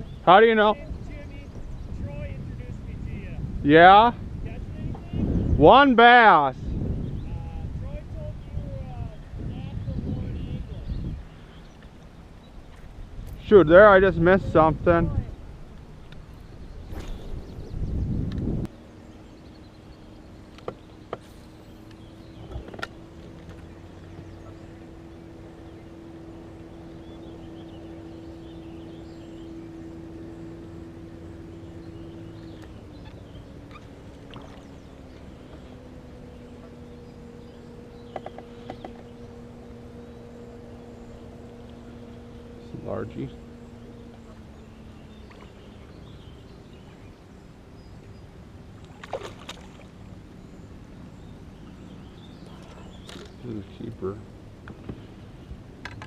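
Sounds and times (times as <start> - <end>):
boat motor running: 0.0 - 56.0
faint bird chirps: 16.3 - 55.7
sharp clicks or splashes: 48.8 - 49.9.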